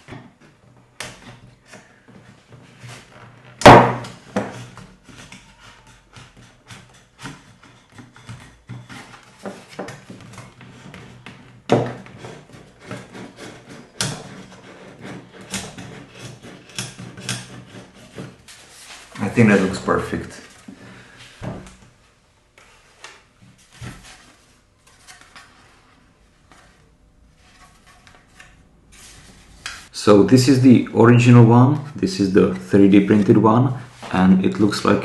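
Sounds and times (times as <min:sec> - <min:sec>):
sharp knocks: 0:03.6 - 0:04.5
chisel scraping epoxy: 0:12.1 - 0:18.4.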